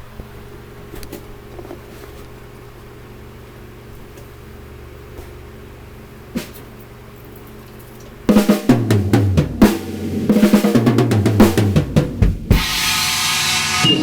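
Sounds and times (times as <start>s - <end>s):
drum hits: 8.3s - 14.0s
cymbal crash: 9.7s - 14.0s.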